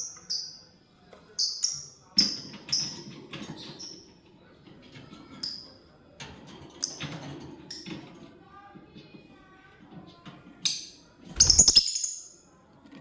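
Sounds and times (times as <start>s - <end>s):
lovebirds chirping: 11.4s - 12.3s.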